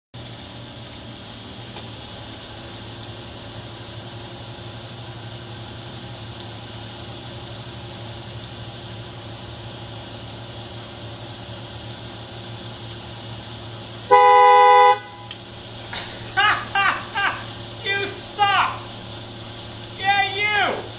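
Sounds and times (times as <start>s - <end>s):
steady low hum: 0.4s - 20.9s
vehicle horn blast: 14.1s - 15.4s.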